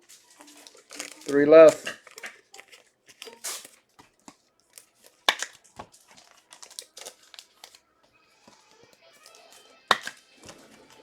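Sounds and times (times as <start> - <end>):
cards being handled: 0.0 - 7.8, 8.4 - 11.0
card wrappers crinkling and tearing: 0.0 - 11.0
sharp crack: 5.2 - 5.6, 9.9 - 10.2.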